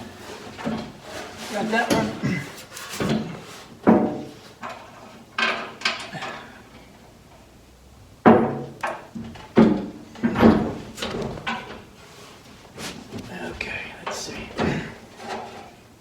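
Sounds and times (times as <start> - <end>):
metal panel clanking: 8.3 - 13.2.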